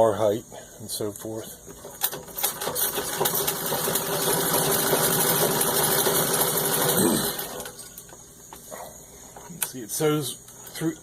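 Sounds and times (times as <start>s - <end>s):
sewing machine stitching: 2.0s - 7.8s.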